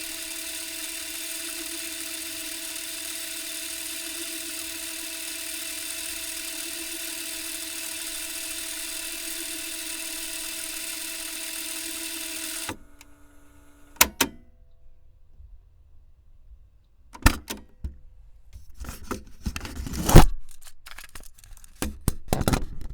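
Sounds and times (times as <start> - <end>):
sharp clicks: 0.0 - 13.1
tape machine motor whirring: 0.0 - 14.1.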